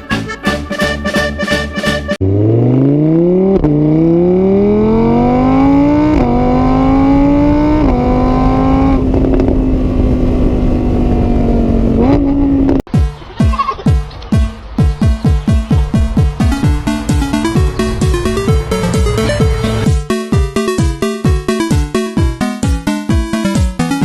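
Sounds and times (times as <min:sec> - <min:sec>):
car engine accelerating: 0:02.2 - 0:12.9, 0:14.1 - 0:22.0.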